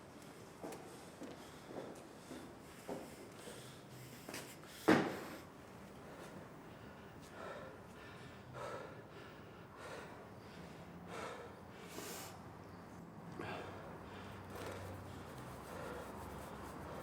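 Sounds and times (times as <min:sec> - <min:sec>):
person gasping breaths: 0:06.1 - 0:12.5, 0:13.3 - 0:16.2.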